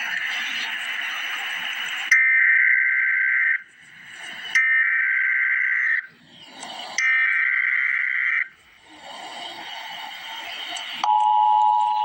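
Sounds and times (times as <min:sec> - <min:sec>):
faint noise: 0:00.0 - 0:12.0
two-tone digital screech bursts: 0:06.9 - 0:08.6.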